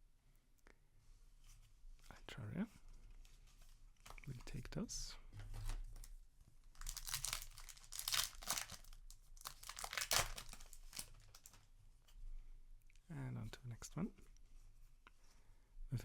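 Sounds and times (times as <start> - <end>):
foil wrapper crinkling and tearing: 6.7 - 11.6.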